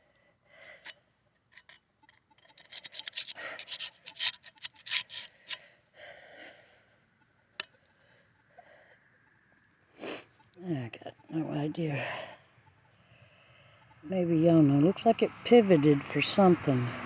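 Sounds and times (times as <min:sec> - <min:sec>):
rough scratching and rubbing: 0:01.6 - 0:05.6.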